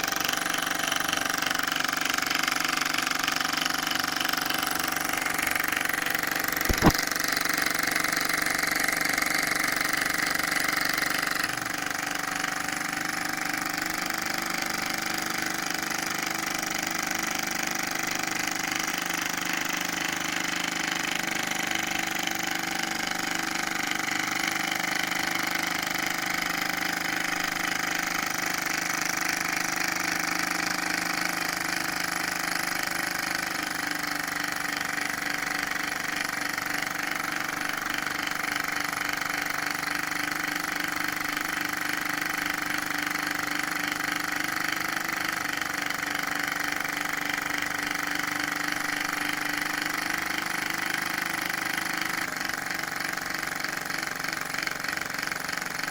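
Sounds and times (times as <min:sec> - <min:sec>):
model engine rattling: 0:00.0 - 0:55.9
sharp click: 0:06.6 - 0:07.0.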